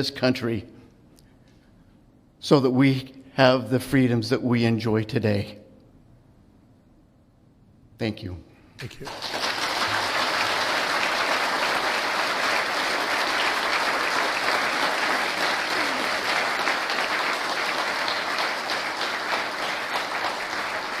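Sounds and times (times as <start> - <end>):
audience applauding: 9.0 - 21.0.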